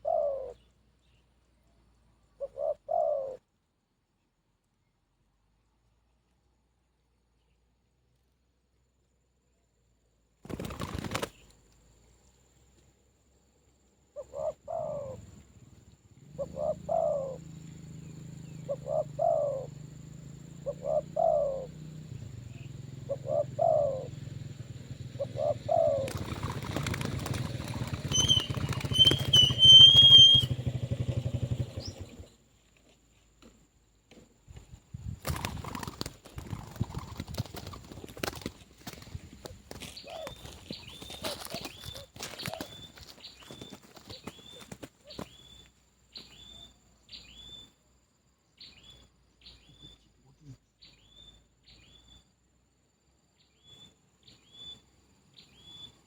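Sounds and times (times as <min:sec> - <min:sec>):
dove cooing: 0:00.0 - 0:00.6, 0:02.4 - 0:03.4, 0:14.2 - 0:15.4, 0:16.2 - 0:17.6, 0:18.4 - 0:19.8, 0:20.6 - 0:24.3, 0:25.2 - 0:32.3, 0:35.3 - 0:45.3
small bird chirping: 0:14.0 - 0:33.2, 0:34.4 - 0:52.5, 0:53.3 - 0:56.0.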